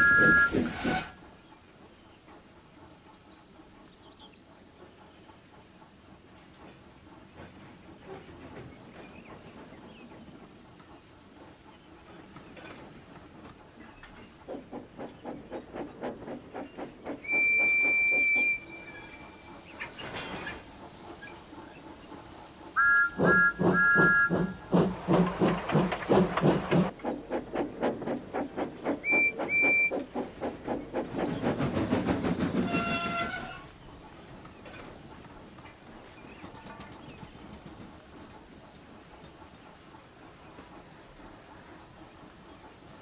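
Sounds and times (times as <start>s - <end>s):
steam locomotive whistle: 0.0s - 1.2s, 22.8s - 24.6s
steam locomotive chuffing: 0.0s - 43.0s.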